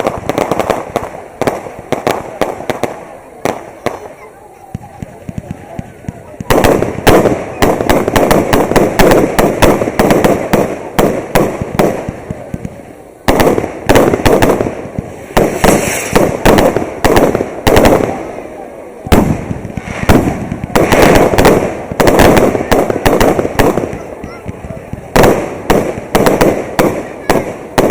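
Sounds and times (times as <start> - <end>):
fireworks bangs and crackling: 0.0 - 27.9.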